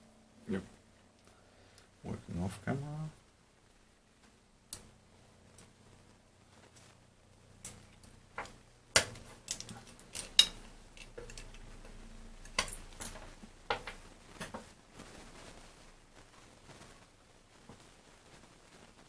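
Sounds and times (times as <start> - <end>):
clicks and knocks of tools: 7.7 - 14.6.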